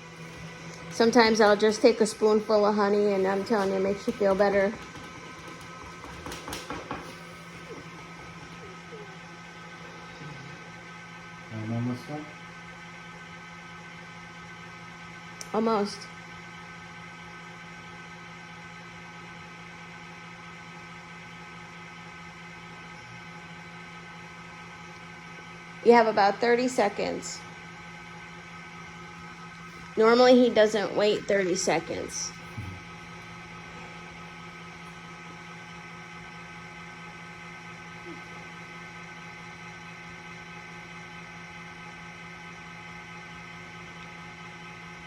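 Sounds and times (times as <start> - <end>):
honey extractor motor humming: 0.0 - 45.0.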